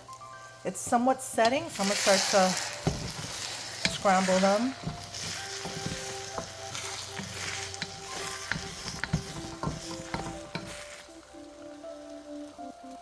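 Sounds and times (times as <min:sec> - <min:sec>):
eggs sizzling in hot oil: 0:00.0 - 0:13.0
utensil scraping a wok: 0:01.4 - 0:11.2.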